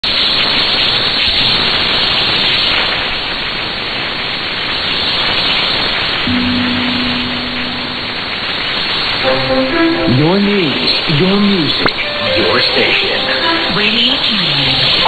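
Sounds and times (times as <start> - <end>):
steady low tone: 6.3 - 11.2
radio static hiss: 10.1 - 15.0.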